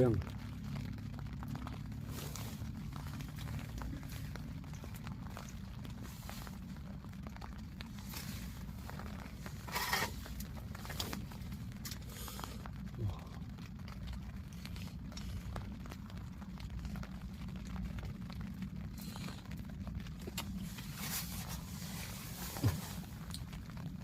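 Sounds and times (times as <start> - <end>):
steady low rumble: 0.0 - 24.0
plastic or paper rustling: 7.8 - 12.6, 20.1 - 23.7.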